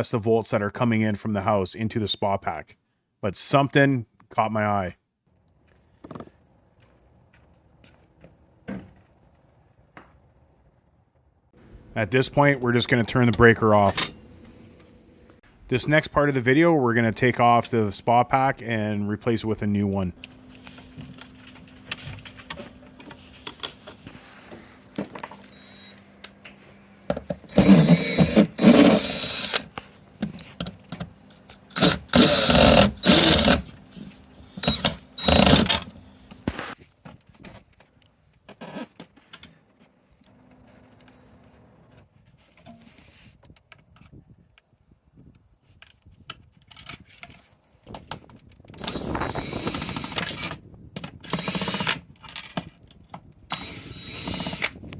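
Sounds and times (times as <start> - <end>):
power drill bursts: 27.5 - 29.7, 31.7 - 33.7, 34.4 - 35.9, 48.8 - 50.4, 51.2 - 52.0, 53.5 - 54.8
small clicks and handling: 45.6 - 49.0.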